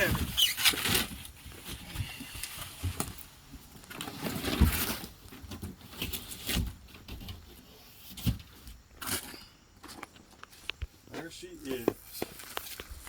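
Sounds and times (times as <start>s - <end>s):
cardboard box scraping and rustling: 0.0s - 3.2s, 3.9s - 9.5s.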